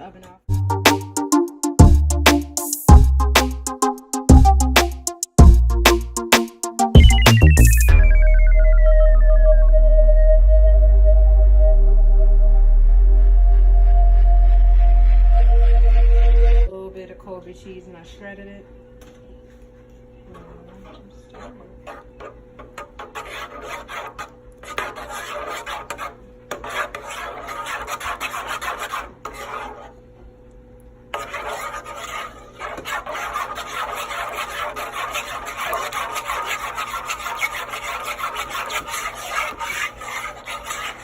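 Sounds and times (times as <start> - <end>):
cheese being grated: 21.3 - 30.0, 31.1 - 41.0.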